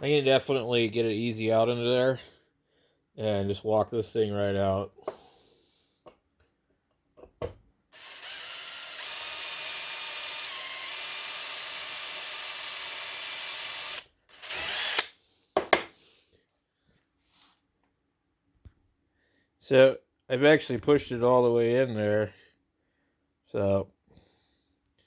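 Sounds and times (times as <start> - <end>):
power drill drilling metal: 8.0 - 15.1.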